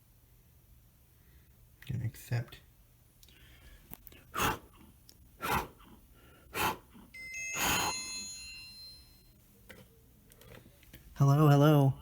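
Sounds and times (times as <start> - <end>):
electronic phone chime: 7.2 - 9.4.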